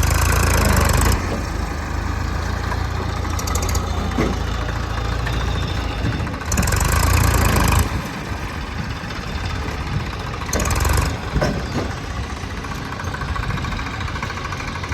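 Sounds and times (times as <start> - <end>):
backhoe diesel engine running: 0.0 - 14.9.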